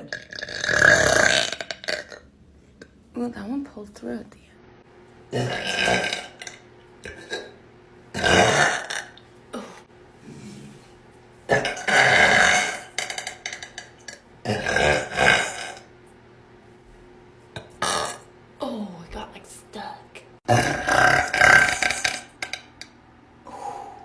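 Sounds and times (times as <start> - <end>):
woman burping: 0.0 - 2.3, 5.3 - 7.6, 8.2 - 9.9, 11.5 - 15.9, 20.5 - 22.7.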